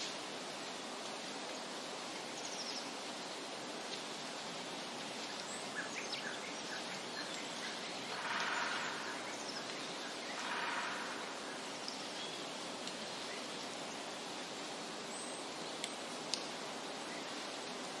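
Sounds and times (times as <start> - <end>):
steady rushing hiss: 0.0 - 18.0
faint bird chirps: 5.2 - 14.2.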